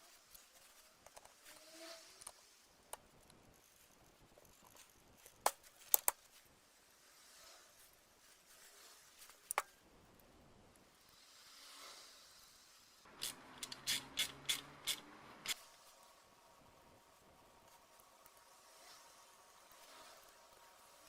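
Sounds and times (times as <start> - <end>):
small parts clicking and tapping: 4.4 - 6.2, 13.1 - 15.7.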